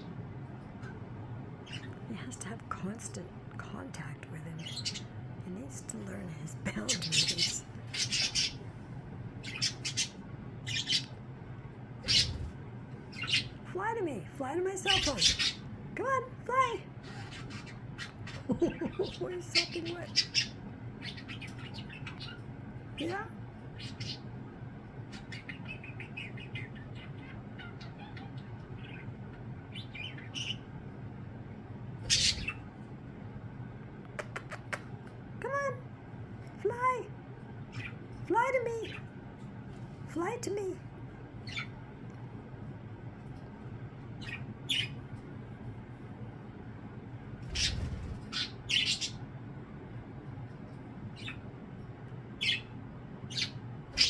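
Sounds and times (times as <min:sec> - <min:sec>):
steady low hum: 0:00.0 - 0:54.0
budgies chirping: 0:01.6 - 0:02.6, 0:03.9 - 0:05.2, 0:05.8 - 0:11.3, 0:12.0 - 0:13.8, 0:14.6 - 0:15.8, 0:16.6 - 0:30.9, 0:32.0 - 0:32.9, 0:37.6 - 0:39.1, 0:41.3 - 0:41.8, 0:44.0 - 0:45.2, 0:47.4 - 0:49.3, 0:51.0 - 0:51.6, 0:52.2 - 0:54.0.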